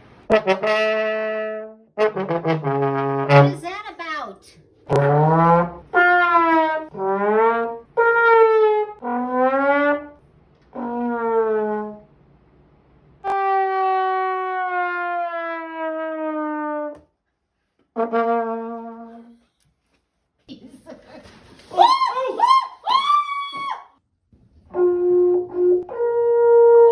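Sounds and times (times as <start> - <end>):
comedic trombone wah-wah: 0.3 - 3.6, 4.8 - 10.2, 24.7 - 26.9.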